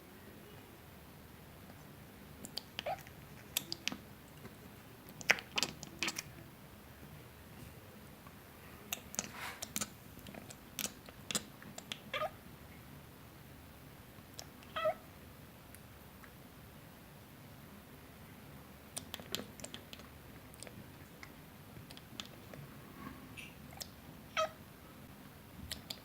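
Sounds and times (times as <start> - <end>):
kitten chattering: 2.4 - 4.0, 5.1 - 6.4, 9.0 - 12.4, 14.4 - 15.0, 23.4 - 24.6.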